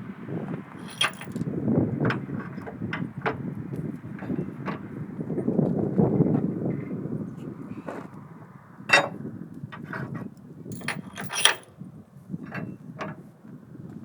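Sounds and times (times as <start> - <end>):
sharp clinks and knocks: 0.8 - 1.4, 10.7 - 11.7.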